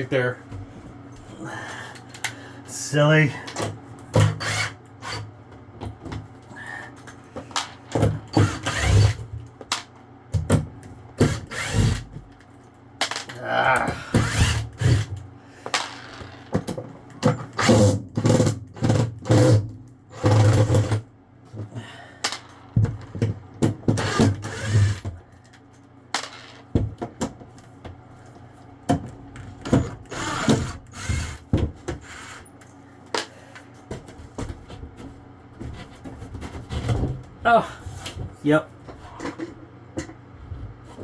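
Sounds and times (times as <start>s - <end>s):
cordless drill running: 4.4s - 5.2s, 8.4s - 9.2s, 11.2s - 12.1s, 14.1s - 15.1s, 24.0s - 25.1s, 30.1s - 31.4s.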